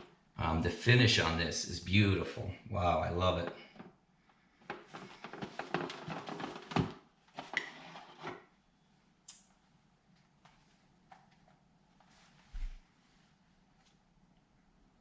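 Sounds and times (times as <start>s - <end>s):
plastic packaging handling noise: 4.7s - 8.4s.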